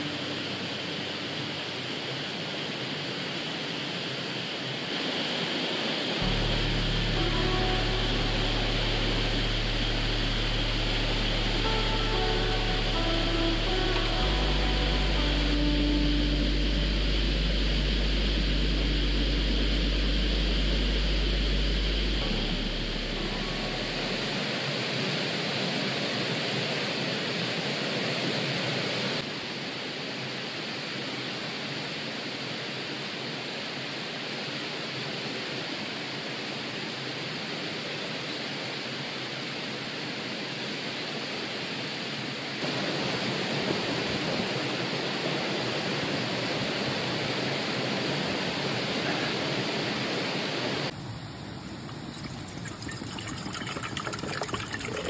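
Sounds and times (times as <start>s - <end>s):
low hum with tones: 6.2s - 25.0s
stream water rushing: 38.8s - 55.0s.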